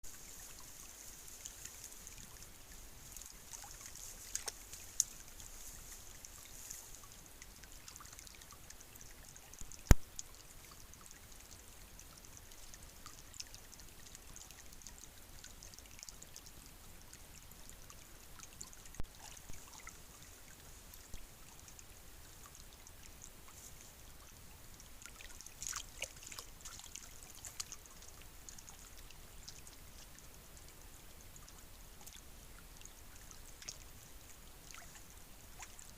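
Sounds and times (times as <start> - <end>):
faint water trickling: 0.0 - 35.9
small splashes in water: 3.1 - 7.0, 25.0 - 27.9.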